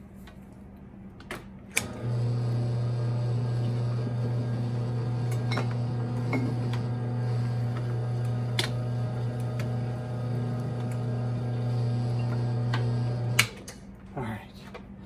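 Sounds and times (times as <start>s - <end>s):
motor humming: 1.8s - 13.6s.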